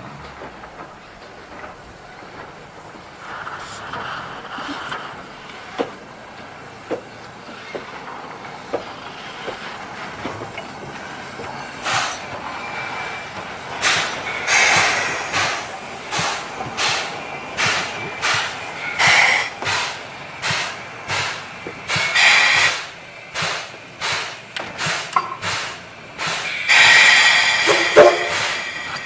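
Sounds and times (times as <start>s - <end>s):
steam locomotive chuffing: 0.0s - 29.0s.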